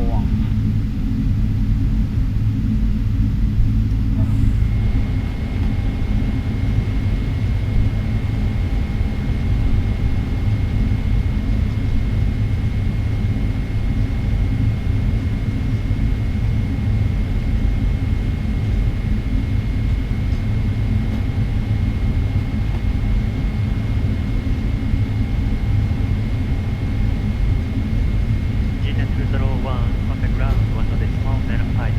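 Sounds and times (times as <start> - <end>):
jet engines idling low rumble: 0.0 - 31.9.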